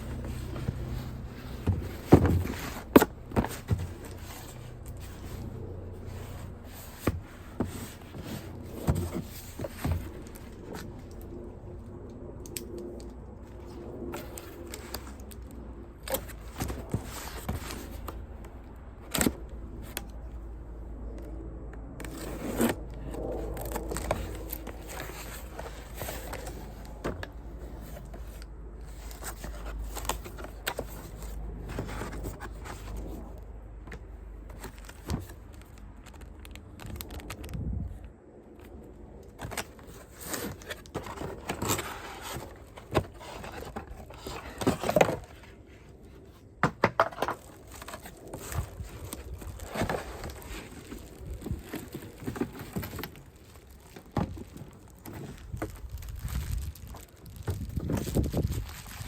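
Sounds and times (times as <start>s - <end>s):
packaging scraping and rustling: 0.0s - 11.6s, 12.5s - 20.1s, 22.0s - 38.0s, 38.6s - 59.0s.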